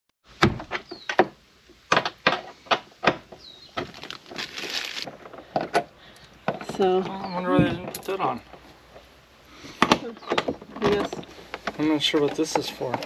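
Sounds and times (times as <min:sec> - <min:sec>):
rustling scrape: 0:03.8 - 0:05.5
sharp clicks and knocks: 0:09.8 - 0:13.0.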